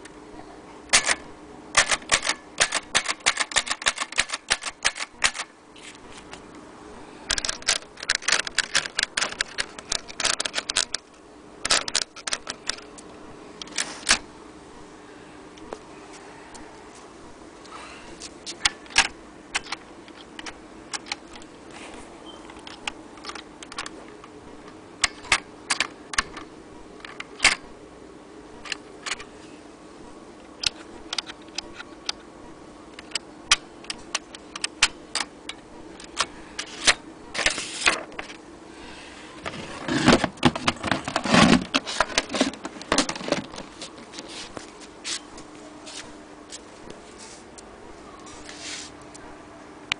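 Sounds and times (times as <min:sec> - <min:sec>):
mechanical clatter: 0:00.9 - 0:05.5.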